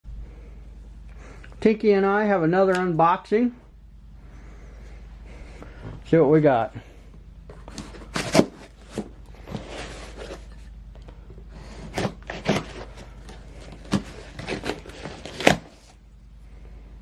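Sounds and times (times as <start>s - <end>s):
steady low hum: 0.0s - 17.0s
package rustling: 7.5s - 10.8s, 11.7s - 16.0s.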